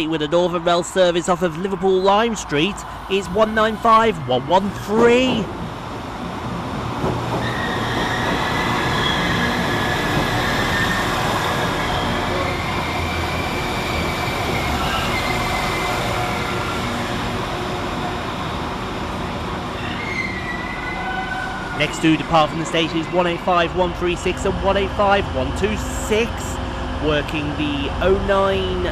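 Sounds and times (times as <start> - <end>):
train engine and wheel rumble: 0.0 - 28.9
high brake squeal: 7.4 - 17.2, 19.7 - 22.0.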